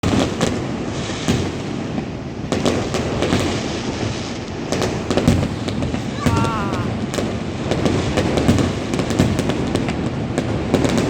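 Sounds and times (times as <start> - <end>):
fireworks bangs: 4.7 - 9.4.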